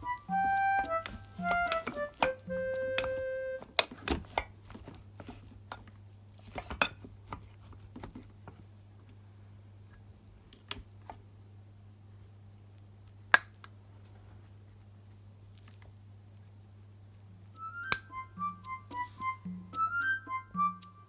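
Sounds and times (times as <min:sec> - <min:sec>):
held musical note: 0:00.0 - 0:03.7, 0:17.6 - 0:21.0.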